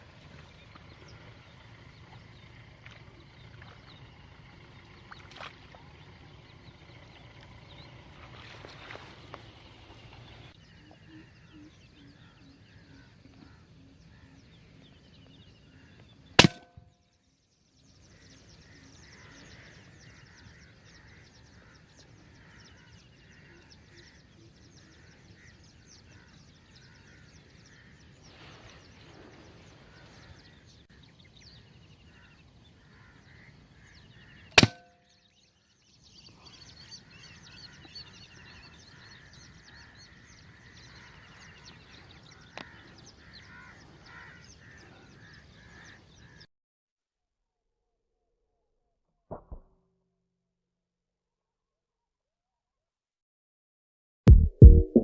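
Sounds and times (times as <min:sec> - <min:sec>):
birds chirping: 0:00.0 - 0:46.5
air rifle shots: 0:16.4 - 0:16.8, 0:34.6 - 0:34.9.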